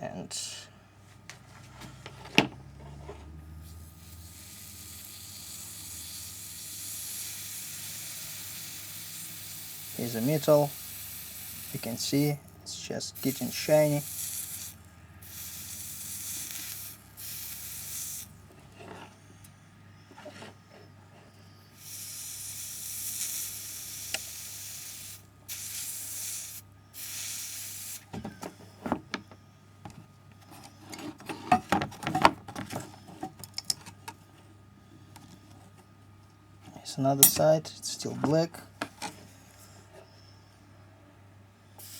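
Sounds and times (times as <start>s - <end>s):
electropolishing brush hissing: 3.6s - 18.4s, 21.7s - 28.1s.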